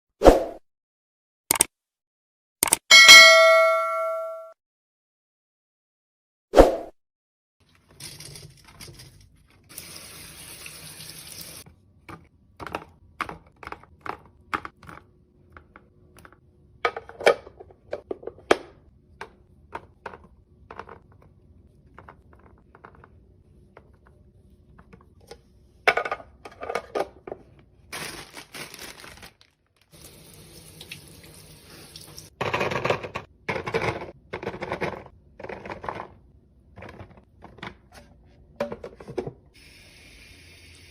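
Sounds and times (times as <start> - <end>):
containers clicking and knocking: 12.1 - 21.3, 32.4 - 38.0.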